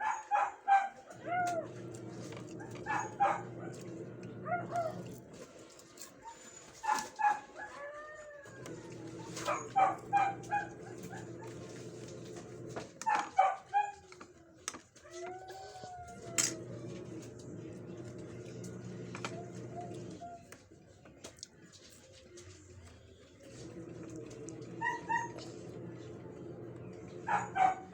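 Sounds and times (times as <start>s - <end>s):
dog barking: 0.0s - 1.7s, 2.5s - 5.2s, 6.8s - 7.8s, 9.3s - 11.6s, 13.0s - 14.0s, 24.8s - 25.5s, 27.2s - 27.9s
steady low hum: 1.2s - 5.5s.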